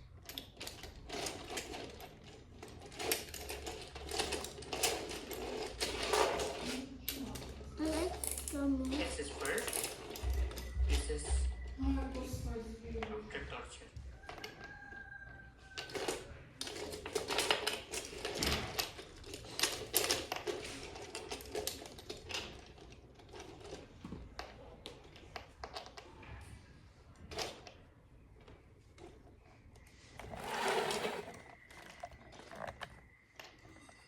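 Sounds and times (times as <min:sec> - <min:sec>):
plastic toy pieces clicking: 0:00.2 - 0:11.2, 0:15.8 - 0:23.8.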